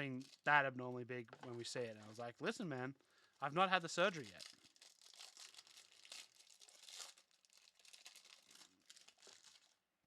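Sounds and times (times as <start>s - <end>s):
foil wrappers crinkling and tearing: 4.1s - 9.8s.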